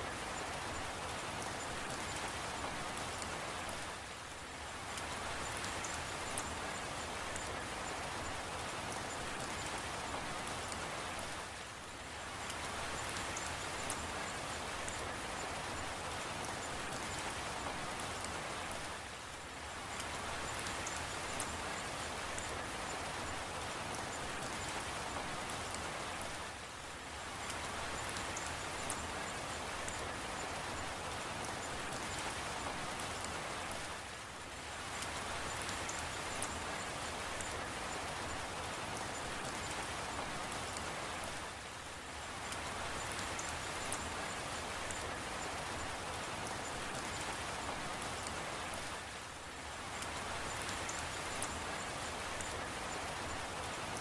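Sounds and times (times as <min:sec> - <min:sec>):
steady rain hiss: 0:00.0 - 0:54.0
rain drop ticks: 0:27.4 - 0:33.9.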